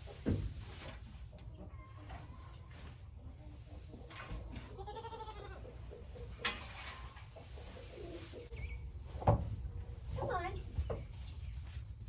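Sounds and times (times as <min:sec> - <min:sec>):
goat bleating: 0:04.5 - 0:05.7.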